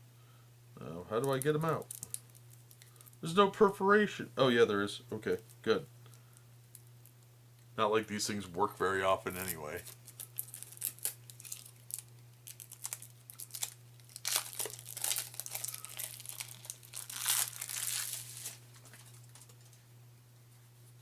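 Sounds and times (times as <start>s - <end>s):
plastic wrap crackling and tearing: 1.2s - 3.2s, 9.3s - 19.7s.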